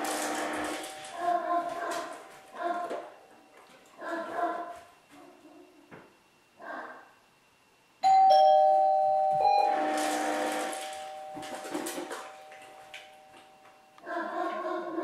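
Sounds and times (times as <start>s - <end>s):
two-tone doorbell chime: 8.0s - 14.0s.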